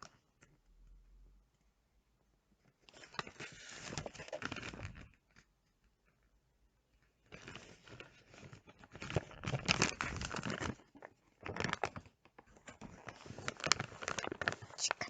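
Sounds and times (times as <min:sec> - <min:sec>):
food packaging crinkling and tearing: 0:02.9 - 0:05.4, 0:07.3 - 0:15.0.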